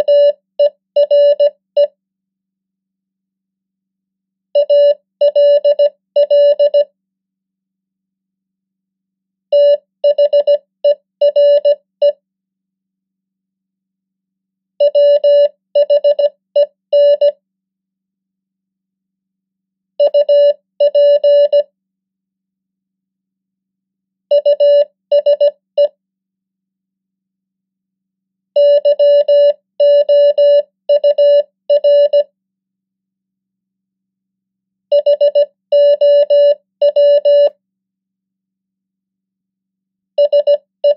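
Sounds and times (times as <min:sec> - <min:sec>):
morse code tone: 0:20.0 - 0:21.7, 0:28.6 - 0:32.3, 0:34.9 - 0:37.6, 0:40.2 - 0:40.9.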